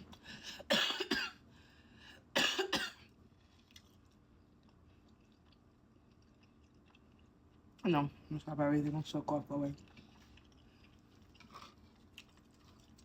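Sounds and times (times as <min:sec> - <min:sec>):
woman coughing: 0:00.6 - 0:01.4, 0:02.4 - 0:03.0.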